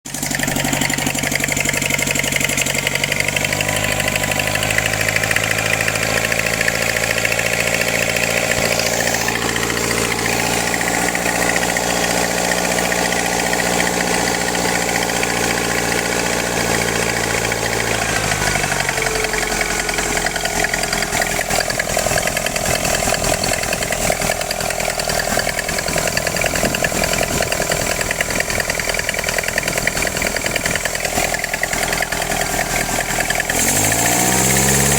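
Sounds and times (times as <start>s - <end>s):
small engine running: 0.1s - 34.9s.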